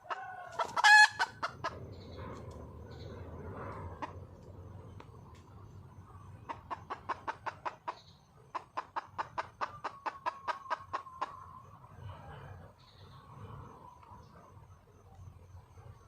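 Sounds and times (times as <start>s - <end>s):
hen clucking: 0.0s - 2.3s, 6.3s - 11.7s.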